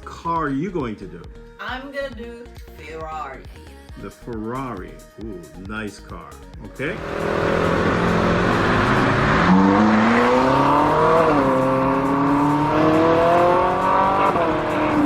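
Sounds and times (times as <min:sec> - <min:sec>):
sports car engine accelerating: 0:06.8 - 0:15.0.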